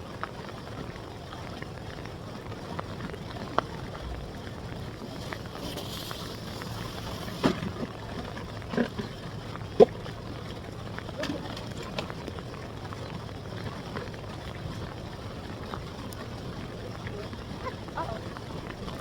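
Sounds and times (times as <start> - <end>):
surf: 0.0 - 19.0
wind: 0.0 - 19.0.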